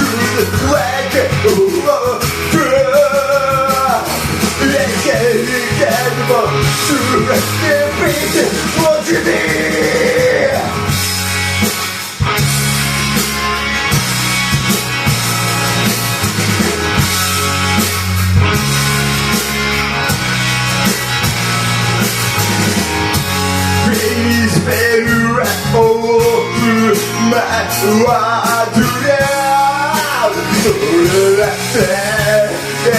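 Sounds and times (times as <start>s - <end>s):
person singing: 0.0s - 10.9s, 23.8s - 32.9s
rock song with guitar and drums: 0.0s - 32.9s.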